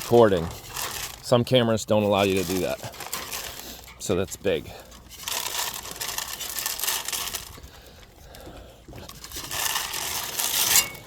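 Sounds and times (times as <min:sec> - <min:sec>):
rustling crunching noise: 0:00.0 - 0:11.0.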